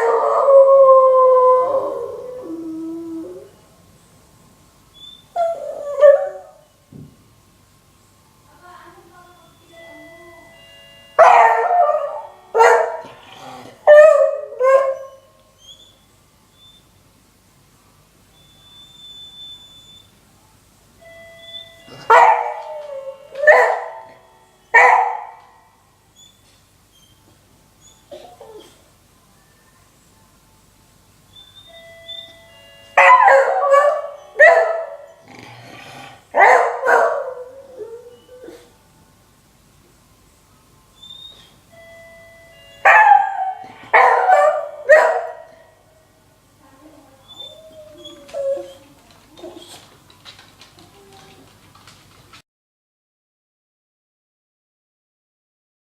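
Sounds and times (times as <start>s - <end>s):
faint steady tones: 7.7s - 13.5s, 28.9s - 35.2s, 37.5s - 47.2s
dog howling barks: 11.2s - 15.3s, 22.1s - 24.2s, 24.8s - 25.5s, 33.0s - 35.2s, 36.4s - 38.7s, 42.9s - 45.7s.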